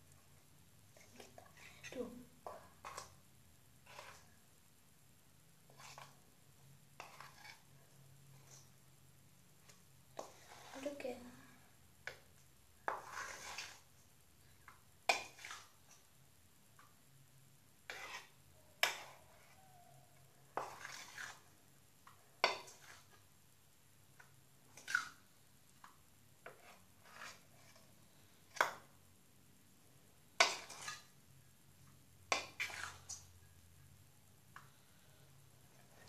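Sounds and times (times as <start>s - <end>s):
utensil scraping a container: 3.8s - 4.3s, 5.7s - 6.2s, 7.0s - 8.7s, 10.2s - 11.0s, 12.9s - 13.9s, 17.9s - 19.7s, 20.5s - 21.5s, 26.4s - 27.9s, 30.4s - 31.1s, 32.3s - 33.2s.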